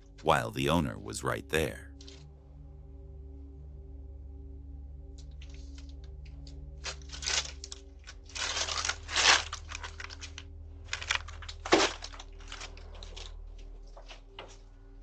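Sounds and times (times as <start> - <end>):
faint steady hum: 0.0 - 6.9.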